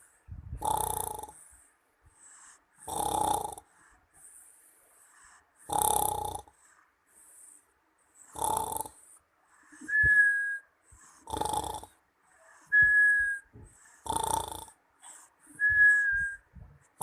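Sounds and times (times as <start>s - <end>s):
girl snoring: 0.6s - 1.4s, 2.8s - 3.7s, 5.7s - 6.5s, 8.3s - 9.0s, 11.2s - 12.0s, 12.7s - 14.8s
high whistle of breath: 9.7s - 10.7s, 12.6s - 13.5s, 15.5s - 16.4s.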